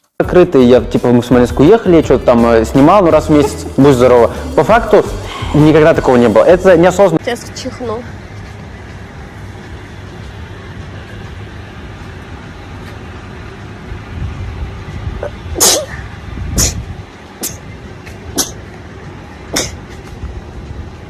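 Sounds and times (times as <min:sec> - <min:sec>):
steady low rumble: 0:01.2 - 0:21.0
woman sneezing: 0:15.6 - 0:16.0, 0:16.6 - 0:17.6, 0:19.6 - 0:19.8.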